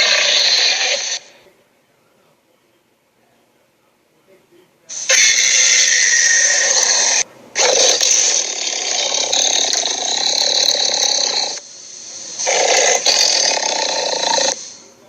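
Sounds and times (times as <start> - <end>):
raspy hissing vocal growls: 0.0 - 1.3, 4.9 - 14.9.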